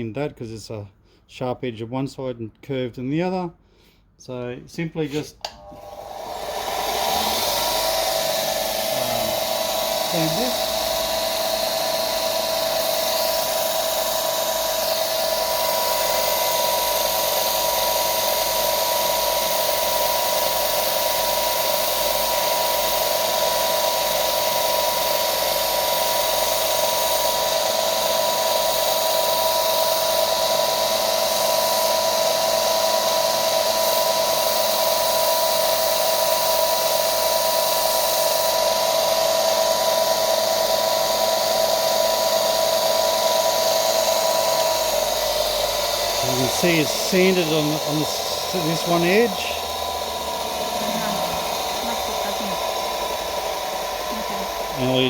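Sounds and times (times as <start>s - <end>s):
belt sander whining: 5.0s - 55.0s.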